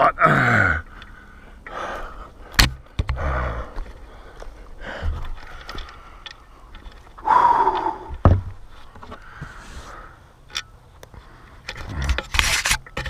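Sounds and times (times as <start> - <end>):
wooden slab knock: 8.2 - 8.6.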